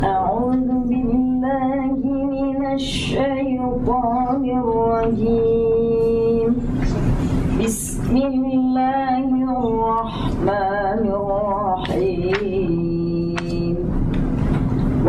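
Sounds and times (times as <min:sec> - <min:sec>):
woman chanting recitation: 0:00.0 - 0:06.8, 0:07.6 - 0:14.0.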